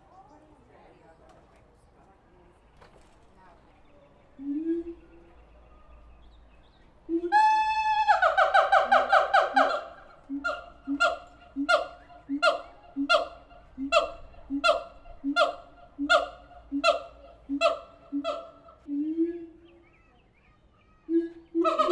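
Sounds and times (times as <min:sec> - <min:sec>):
gibbons calling: 0:07.1 - 0:20.2, 0:21.0 - 0:21.9.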